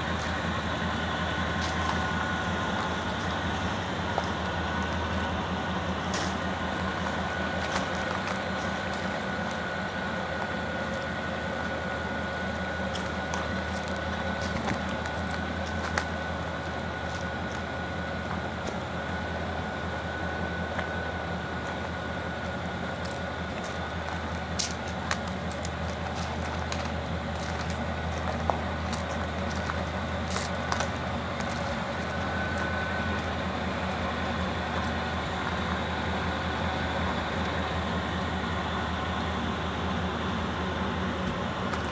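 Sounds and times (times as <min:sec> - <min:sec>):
pickup engine idling: 0:00.0 - 0:41.9.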